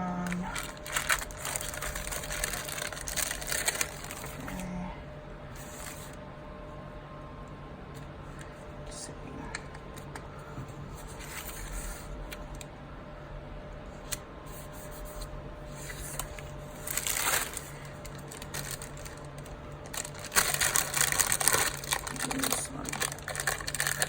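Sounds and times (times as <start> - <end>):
paper rustling: 0.2 - 4.6, 5.6 - 6.2, 11.0 - 12.1, 14.6 - 24.0.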